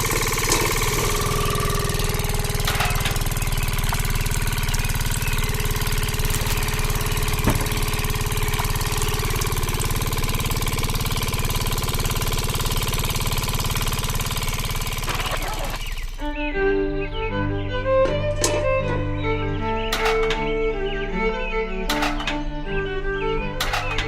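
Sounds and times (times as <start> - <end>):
engine idling: 0.0 - 24.0
sharp click: 19.9 - 20.5, 21.9 - 22.4, 23.6 - 24.0.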